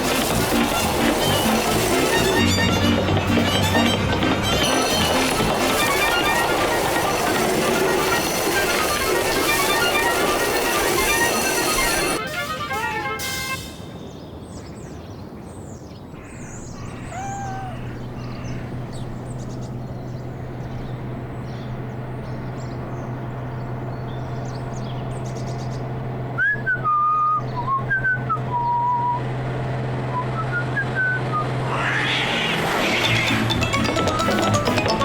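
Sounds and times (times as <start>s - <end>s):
bird-like chirps and whistles: 26.4s - 29.2s.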